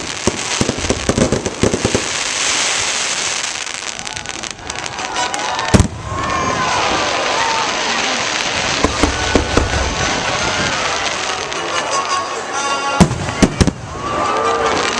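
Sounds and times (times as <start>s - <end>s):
fireworks crackling and banging: 0.0s - 14.9s.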